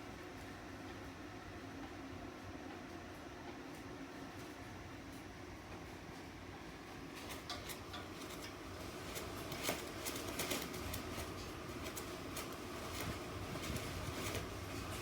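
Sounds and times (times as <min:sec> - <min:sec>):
light taps and rattles: 0:07.1 - 0:15.0.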